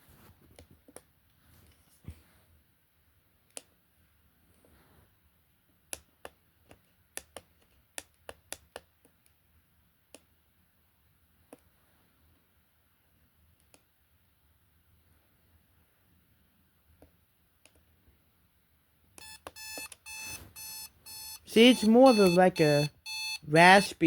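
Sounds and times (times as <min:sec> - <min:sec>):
alarm clock button clicks: 0:19.2 - 0:24.0.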